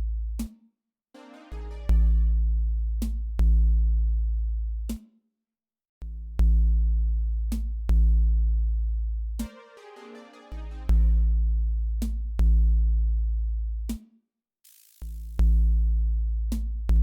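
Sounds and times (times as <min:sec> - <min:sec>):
electronic music with synth bass: 0:01.2 - 0:02.4, 0:09.4 - 0:11.4.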